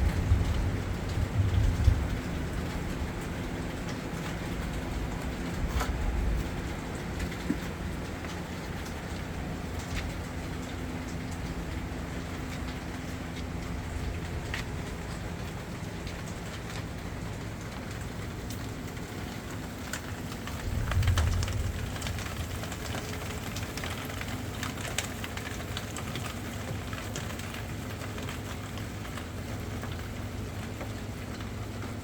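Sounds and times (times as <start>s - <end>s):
steady rain: 0.0s - 32.0s
drips ticking: 0.1s - 32.0s.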